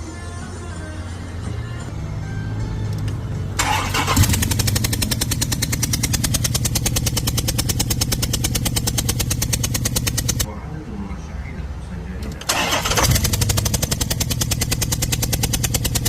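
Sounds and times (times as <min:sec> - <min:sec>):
music: 0:00.0 - 0:04.8
engine starter cranking: 0:03.0 - 0:10.5, 0:12.2 - 0:16.0.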